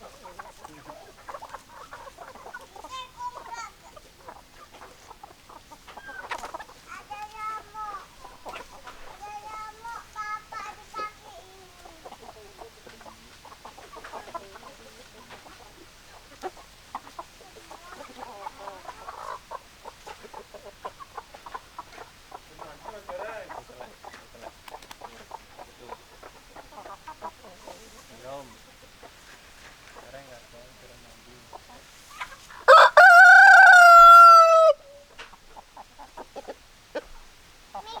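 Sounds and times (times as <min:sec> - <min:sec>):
chickens clucking: 0:00.0 - 0:38.0
rooster crowing: 0:32.7 - 0:35.0.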